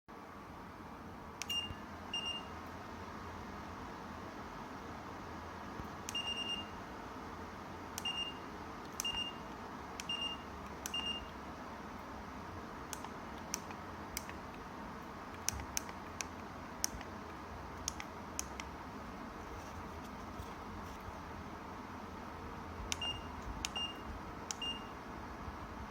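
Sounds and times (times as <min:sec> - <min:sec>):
sharp clicks: 0:12.9 - 0:14.6, 0:15.3 - 0:17.1, 0:17.8 - 0:18.7.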